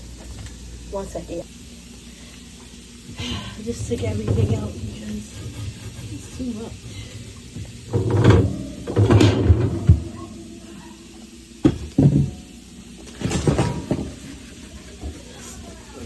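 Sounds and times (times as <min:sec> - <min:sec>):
items knocking in a refrigerator: 0:03.8 - 0:05.2, 0:07.5 - 0:10.7, 0:11.6 - 0:14.4.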